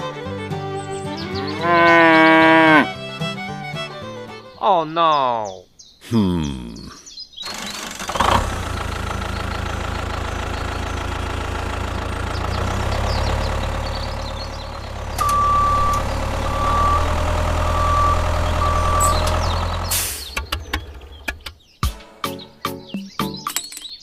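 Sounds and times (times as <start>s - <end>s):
vehicle engine humming: 0.0s - 4.5s, 7.5s - 21.6s
high beeps: 15.2s - 19.3s.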